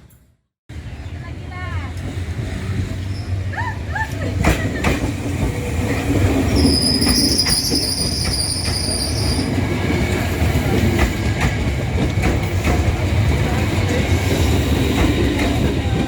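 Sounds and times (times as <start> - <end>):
train rumble and wheel clacks: 0.0 - 16.0
high-pitched wheel squeal: 6.5 - 9.5.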